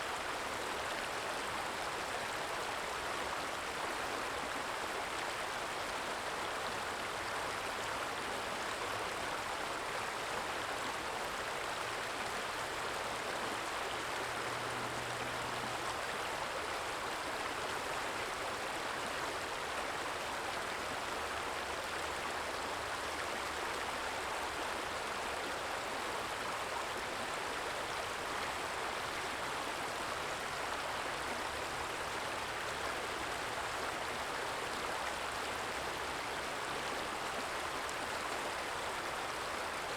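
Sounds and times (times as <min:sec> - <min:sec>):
stream water trickling: 0:00.0 - 0:39.9.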